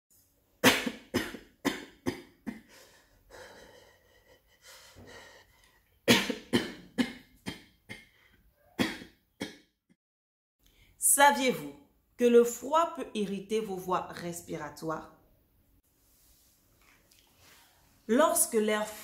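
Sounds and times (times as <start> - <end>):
person coughing: 0.6 - 2.7, 6.1 - 8.1, 8.8 - 9.1.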